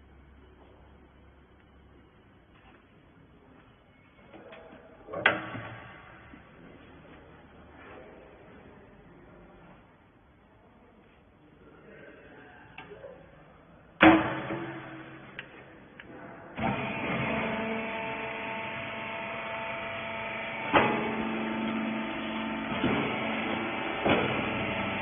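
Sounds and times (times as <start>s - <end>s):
loud metal clank: 14.0s - 15.3s
baler machine hum: 14.0s - 25.0s.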